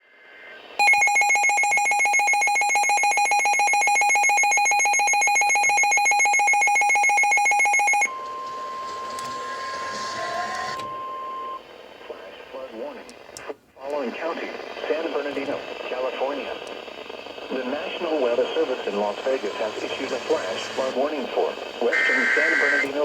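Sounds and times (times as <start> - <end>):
radio hiss: 0.0 - 0.8, 8.5 - 23.0
pulsing electronic alarm: 0.8 - 11.6, 21.9 - 23.0.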